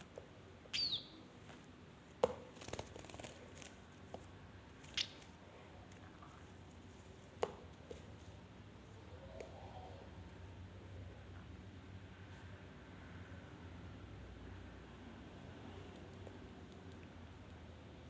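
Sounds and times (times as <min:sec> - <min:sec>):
young bird chirping: 0:00.7 - 0:01.2, 0:04.9 - 0:05.2.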